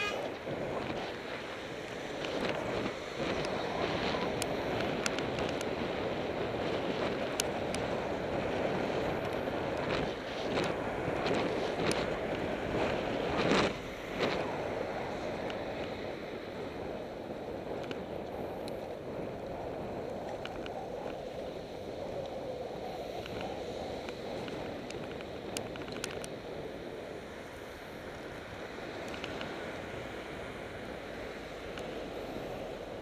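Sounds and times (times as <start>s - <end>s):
wind rushing over microphone: 0.0s - 33.0s
faint ticks: 4.2s - 5.7s, 7.0s - 8.0s, 17.7s - 21.2s, 23.0s - 26.6s, 28.9s - 29.8s, 31.6s - 32.0s.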